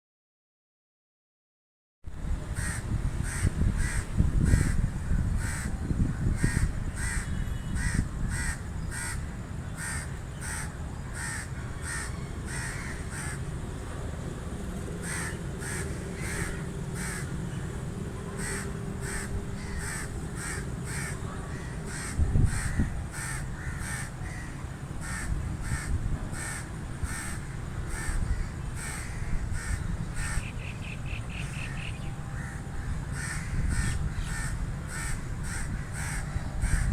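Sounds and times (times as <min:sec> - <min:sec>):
crows cawing: 0:02.6 - 0:04.8, 0:05.4 - 0:09.2, 0:09.8 - 0:13.5, 0:15.0 - 0:17.4, 0:18.4 - 0:36.9.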